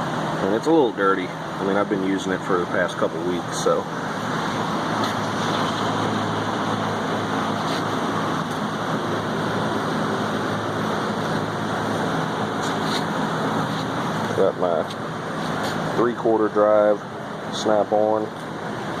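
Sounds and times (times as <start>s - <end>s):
machinery humming: 0.0s - 19.0s.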